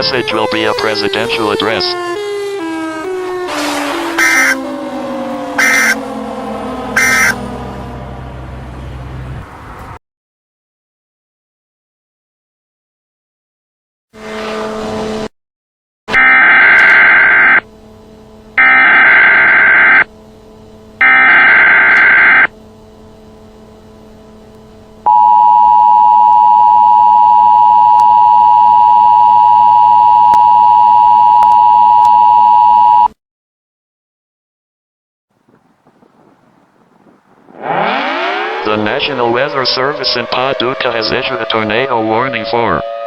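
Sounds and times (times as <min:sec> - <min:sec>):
harsh two-note electronic blare: 0:00.5 - 0:09.1, 0:16.1 - 0:26.2, 0:37.5 - 0:43.0
short tone: 0:04.2 - 0:04.8, 0:05.5 - 0:07.6, 0:25.1 - 0:33.1.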